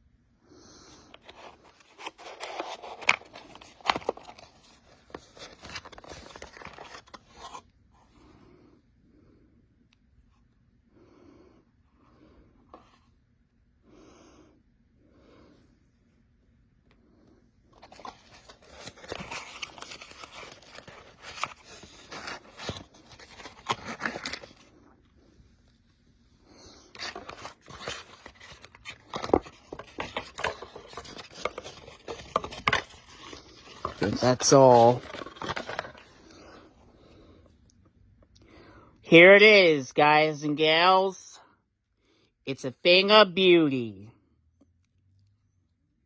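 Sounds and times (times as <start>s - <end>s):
soft breathing close to microphone: 0.3s - 2.8s, 35.0s - 37.8s
packaging rustling and scraping: 1.0s - 7.7s, 17.7s - 25.0s, 26.4s - 37.2s.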